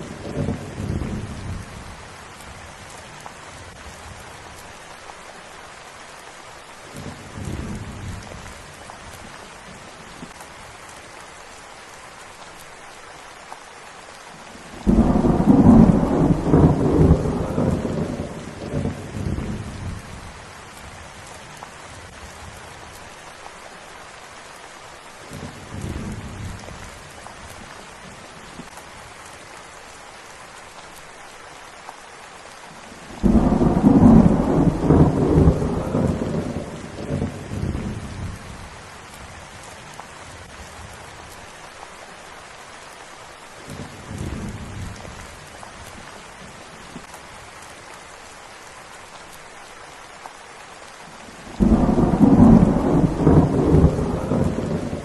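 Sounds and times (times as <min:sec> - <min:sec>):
thunder rumbling: 0:00.0 - 0:02.6, 0:14.7 - 0:21.0, 0:33.1 - 0:38.7, 0:51.4 - 0:55.0
steady rain: 0:00.0 - 0:55.0.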